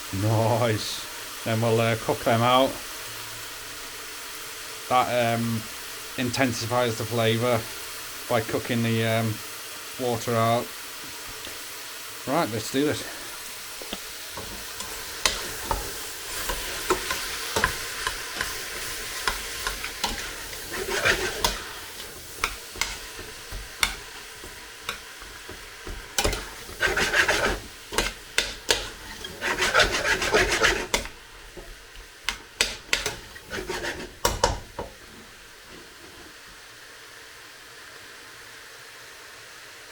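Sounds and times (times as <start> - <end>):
food sizzling in a pan: 0.0 - 39.9
utensil scraping a pan: 13.8 - 36.4.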